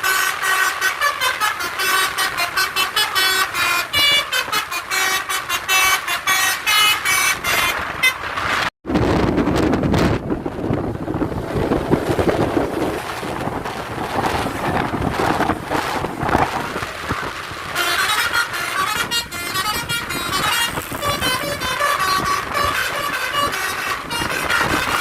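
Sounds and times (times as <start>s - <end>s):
multi-tone musical bus horn: 0.0s - 8.6s, 17.6s - 25.0s
bus engine and road noise: 0.0s - 25.0s.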